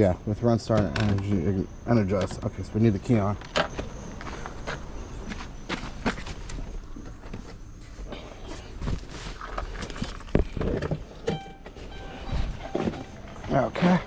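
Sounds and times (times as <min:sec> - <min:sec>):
short electronic tone: 0:11.3 - 0:13.4.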